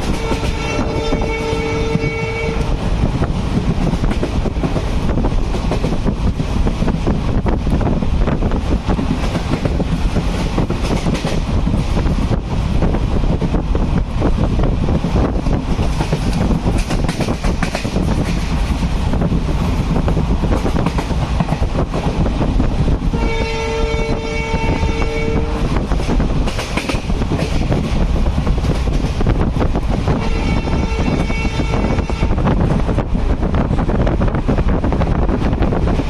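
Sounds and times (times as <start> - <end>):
train horn: 0.0 - 2.8, 23.1 - 25.8, 30.1 - 32.5
railway carriage rumbling: 0.0 - 36.0
wheels clacking over rail joints: 15.5 - 18.9, 25.8 - 30.1.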